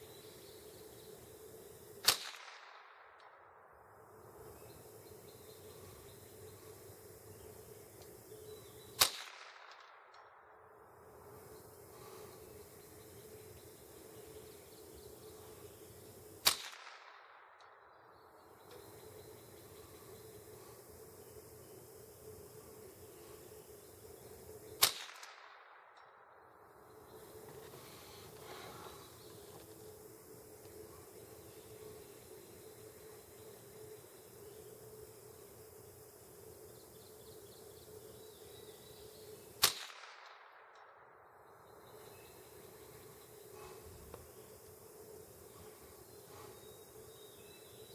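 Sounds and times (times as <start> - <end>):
rifle shot crack: 2.0 - 3.0, 9.0 - 9.9, 16.4 - 17.4, 24.8 - 25.7, 39.6 - 40.6.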